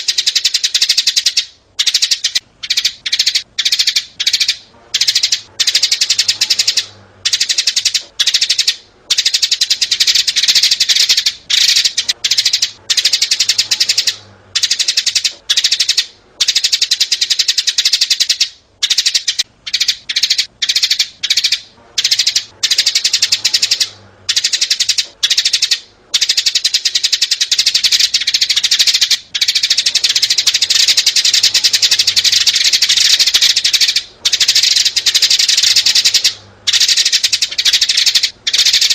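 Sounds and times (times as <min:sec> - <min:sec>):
sparrows chirping: 0:00.0 - 0:38.9.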